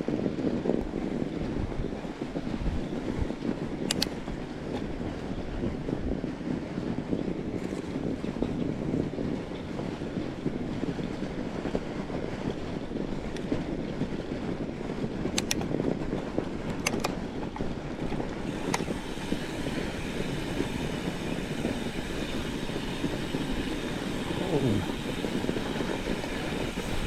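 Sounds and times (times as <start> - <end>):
wind buffeting microphone: 0.0 - 27.0
sharp clicks: 3.8 - 4.2, 15.3 - 15.7, 16.7 - 17.2.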